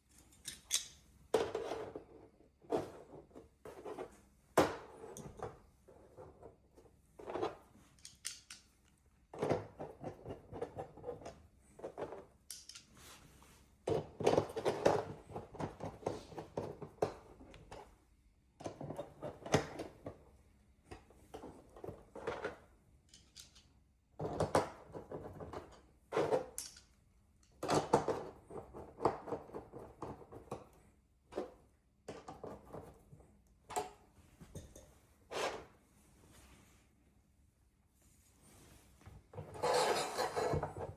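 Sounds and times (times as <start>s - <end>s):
hands rustling and scraping: 37.9s - 40.4s.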